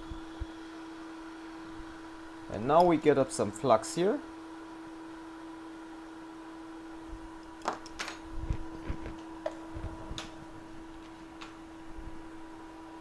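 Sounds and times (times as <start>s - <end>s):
steady electrical hum: 0.0s - 13.0s.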